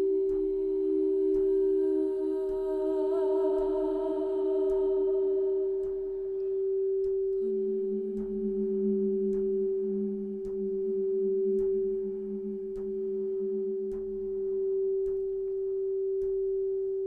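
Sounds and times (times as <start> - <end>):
sustained pure tone drone: 0.0 - 17.0
faint ticks: 0.2 - 2.8, 10.4 - 10.8, 13.9 - 14.4.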